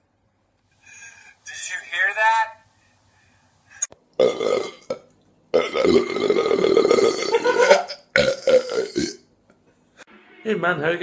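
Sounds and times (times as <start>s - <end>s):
person burping: 4.2s - 9.3s.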